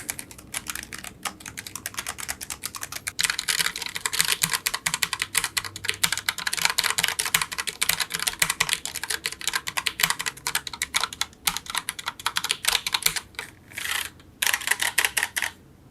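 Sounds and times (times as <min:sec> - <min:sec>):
clicky keyboard keystrokes: 0:00.0 - 0:13.5, 0:14.4 - 0:15.6.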